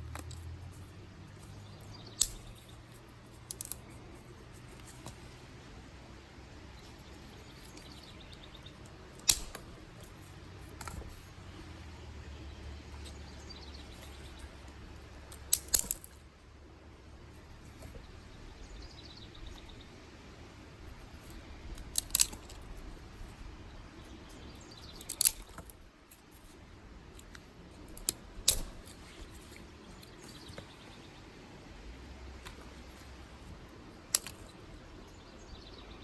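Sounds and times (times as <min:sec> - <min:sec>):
dry sticks snapping: 0:00.0 - 0:05.7, 0:06.7 - 0:16.3, 0:20.7 - 0:23.4, 0:24.0 - 0:31.2, 0:32.1 - 0:34.9
faint bird chirps: 0:17.4 - 0:21.4.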